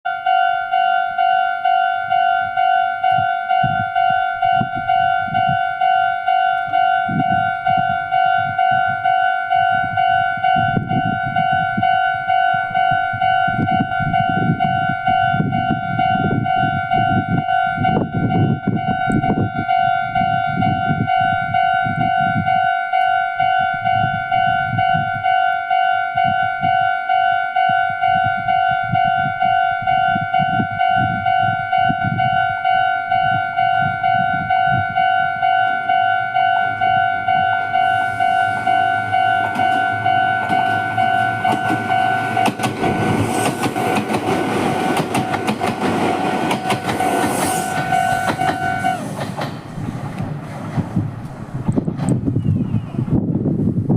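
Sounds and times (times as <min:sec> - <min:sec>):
level-crossing warning bell ringing: 0:00.1 - 0:49.7
train wheels clattering over rail joints: 0:38.6 - 0:52.2.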